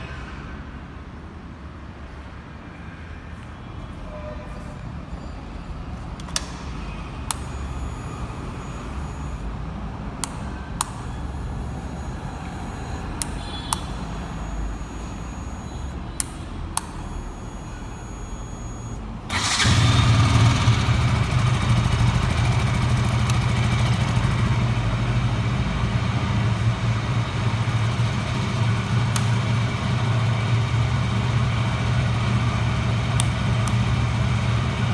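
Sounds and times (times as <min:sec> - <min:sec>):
sharp clicks: 0:07.2 - 0:09.4, 0:10.2 - 0:24.5, 0:33.1 - 0:34.0
motorcycle engine idling: 0:17.2 - 0:34.9.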